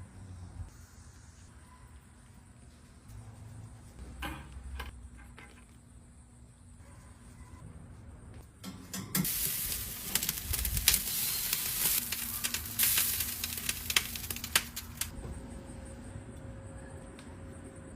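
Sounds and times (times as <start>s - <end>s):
food sizzling and crackling: 9.2s - 15.1s.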